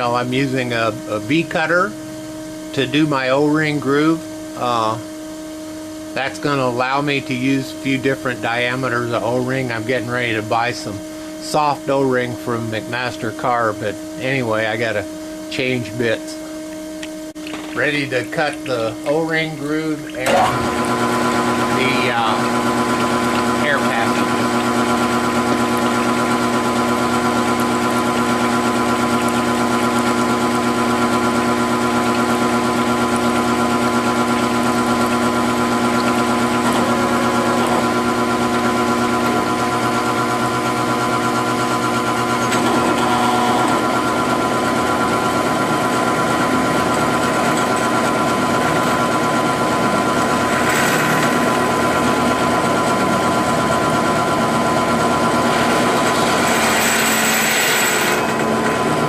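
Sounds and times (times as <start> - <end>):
milling machine motor whine: 0.0 - 59.0.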